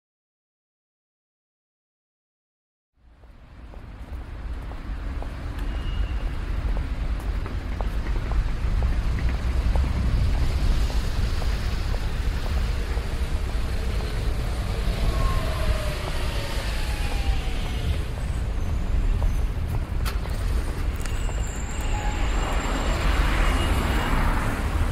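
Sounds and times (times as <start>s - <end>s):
street traffic passing: 3.0s - 24.9s.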